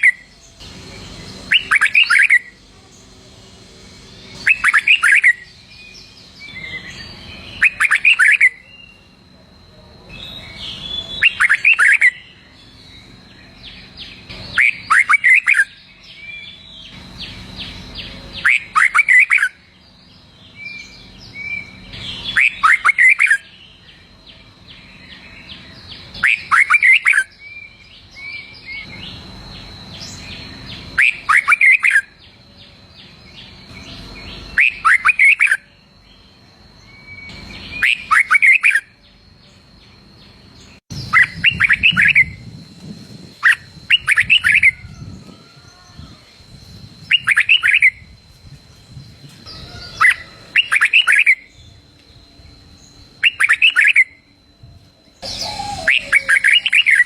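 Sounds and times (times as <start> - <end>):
soft bird chirps: 0.0 - 57.0
bird whistled song phrase: 1.4 - 2.6, 4.2 - 9.1, 10.1 - 19.6, 20.5 - 24.0, 29.9 - 32.2, 36.8 - 39.0, 41.0 - 42.4, 43.3 - 46.2, 46.8 - 48.1, 49.5 - 51.8, 52.8 - 54.3, 55.2 - 57.0.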